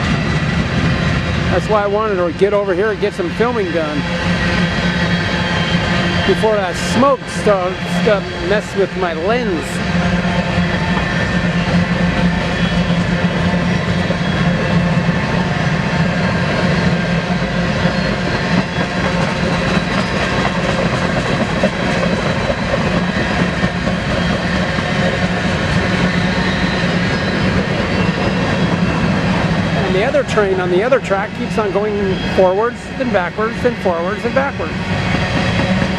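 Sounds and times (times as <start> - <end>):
freight train rolling past: 0.0 - 35.9.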